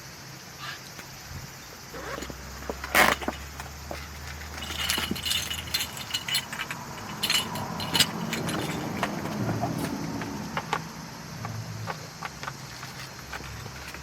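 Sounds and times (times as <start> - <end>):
light metallic clinks: 3.3 - 10.1.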